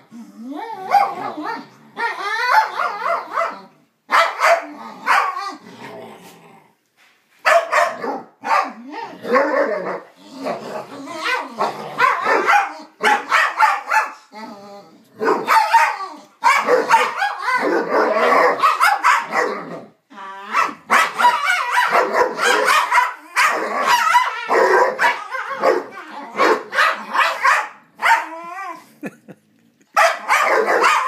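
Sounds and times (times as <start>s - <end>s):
dogs barking and growling: 0.0s - 31.0s
rattling dog growl: 4.8s - 6.8s, 10.1s - 12.0s.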